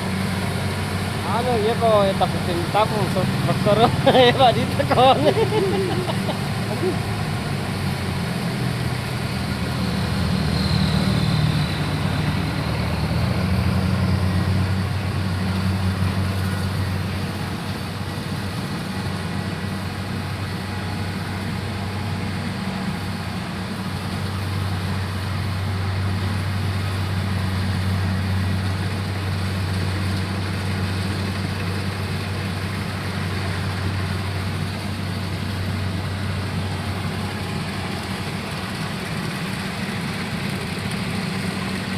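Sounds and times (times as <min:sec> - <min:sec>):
engine running with low hum: 0:00.0 - 0:41.9
faint high whistle: 0:10.2 - 0:12.8.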